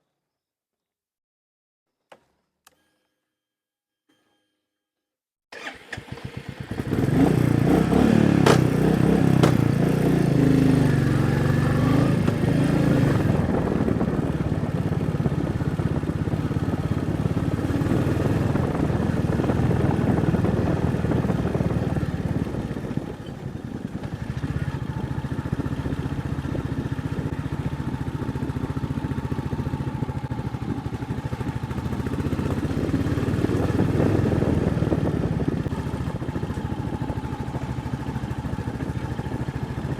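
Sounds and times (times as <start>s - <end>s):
motorcycle engine running: 5.6s - 39.9s
sharp knocks: 8.4s - 8.8s, 9.4s - 9.7s.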